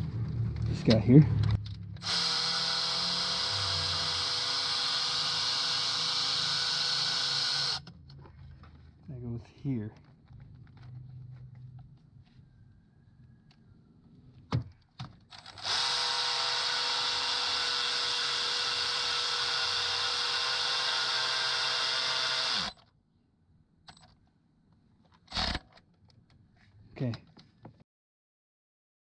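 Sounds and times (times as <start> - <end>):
cordless drill running: 2.0 - 7.9, 15.5 - 22.8.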